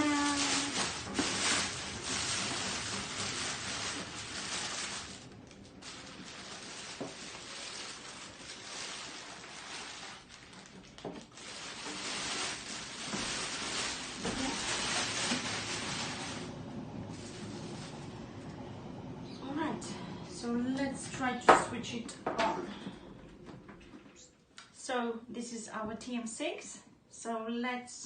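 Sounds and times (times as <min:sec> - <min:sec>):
packaging rustling and crinkling: 0:00.0 - 0:18.1.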